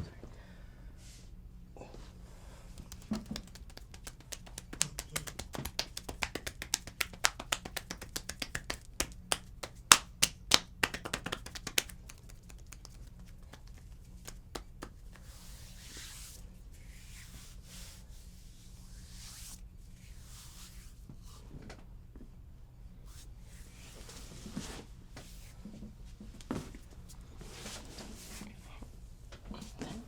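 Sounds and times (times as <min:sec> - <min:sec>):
faint rustle of hands: 0:02.5 - 0:21.8, 0:23.0 - 0:30.0
hands striking skin: 0:02.8 - 0:15.4.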